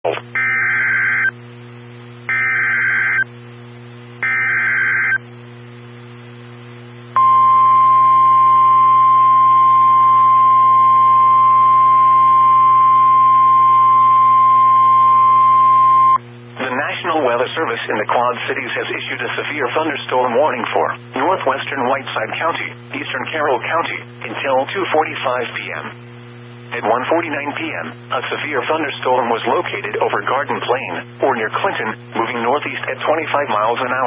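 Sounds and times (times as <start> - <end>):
low hum: 0.0 - 33.5
steady high alarm tone: 0.3 - 1.4, 2.3 - 3.3, 4.2 - 5.2, 7.2 - 16.2
radio hiss: 16.5 - 34.0.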